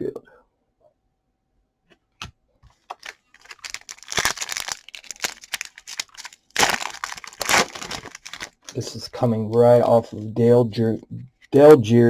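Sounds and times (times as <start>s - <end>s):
plastic wrapper crinkling and tearing: 2.9s - 9.0s.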